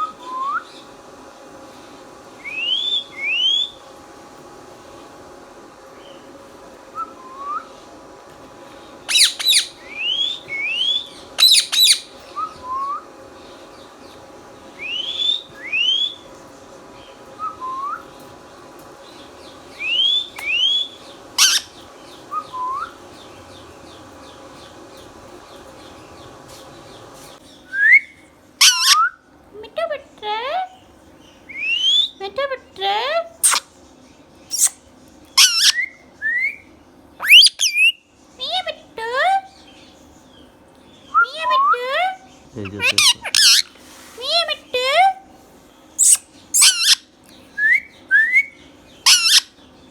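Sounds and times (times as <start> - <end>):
parakeet squawks: 9.1 - 12.2, 20.0 - 21.8, 28.6 - 29.2, 33.4 - 33.7, 34.5 - 34.8, 35.4 - 35.9, 37.2 - 39.3, 41.3 - 45.1, 46.0 - 47.1, 49.0 - 49.6.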